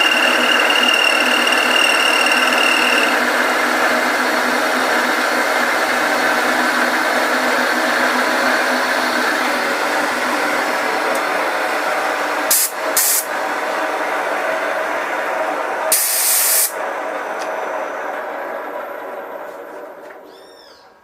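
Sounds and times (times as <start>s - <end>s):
machine tool cutting metal: 0.0s - 3.4s.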